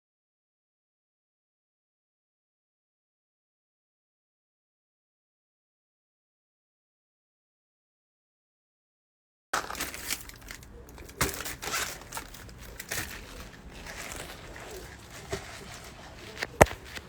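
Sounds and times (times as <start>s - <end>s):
rustling handling noise: 9.6s - 17.0s.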